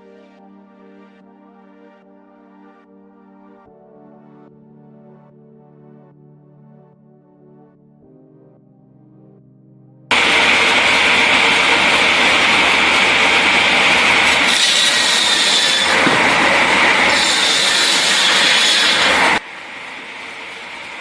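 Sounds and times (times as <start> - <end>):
machine shredding wood: 10.1 - 19.4.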